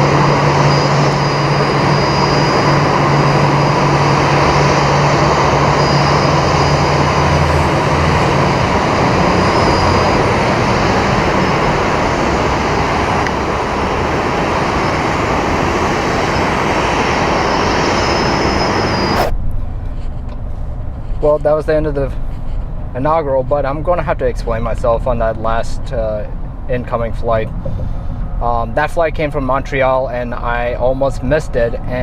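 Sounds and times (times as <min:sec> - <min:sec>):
loud rushing roar: 0:00.0 - 0:19.7
low hum: 0:00.0 - 0:32.0.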